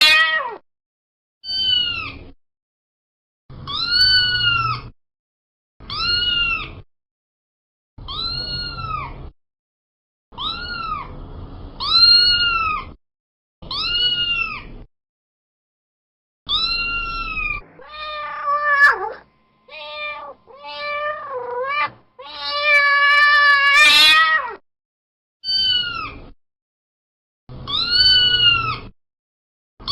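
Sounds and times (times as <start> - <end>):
cat meowing: 0.0 - 0.6, 3.6 - 4.9, 5.9 - 6.8, 8.1 - 9.2, 10.4 - 11.1, 11.8 - 12.9, 13.6 - 14.7, 16.5 - 24.6, 25.4 - 26.3, 27.6 - 28.9.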